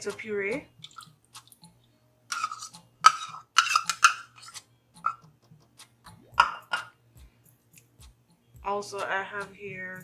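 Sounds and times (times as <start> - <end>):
utensil clinking and scraping dish: 2.3 - 5.2.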